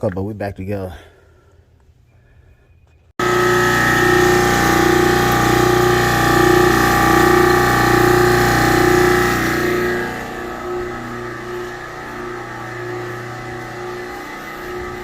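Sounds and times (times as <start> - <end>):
carpet-cleaning machine humming: 3.2 - 15.0.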